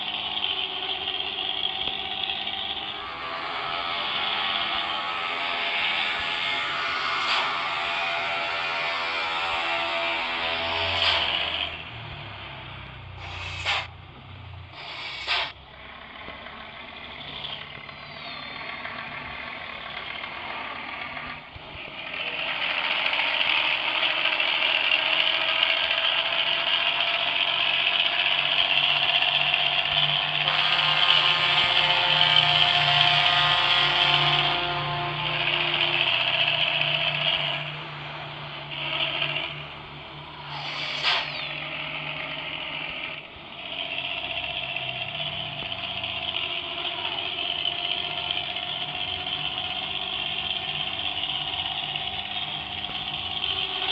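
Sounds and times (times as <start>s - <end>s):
bus engine snoring exhaust: 0.0s - 53.9s
sharp bursts of noise: 5.8s - 12.1s, 13.0s - 14.0s, 14.6s - 15.6s, 23.0s - 53.9s.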